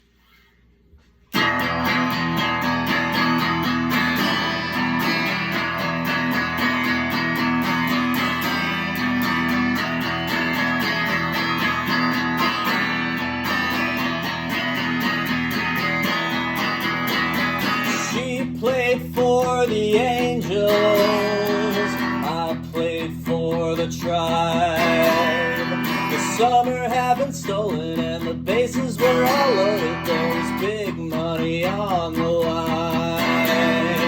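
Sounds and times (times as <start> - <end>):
guitar strumming: 1.3 - 34.0.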